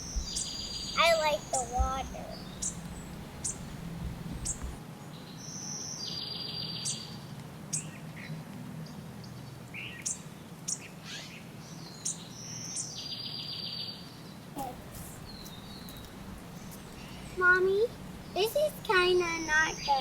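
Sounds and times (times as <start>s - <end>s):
buzzy trilled bird call: 0.0s - 4.8s, 14.7s - 20.0s
songbirds chirping: 0.0s - 20.0s.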